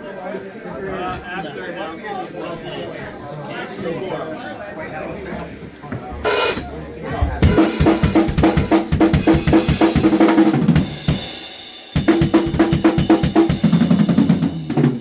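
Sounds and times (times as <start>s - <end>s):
drum kit played fast: 6.2s - 6.7s, 7.4s - 15.0s.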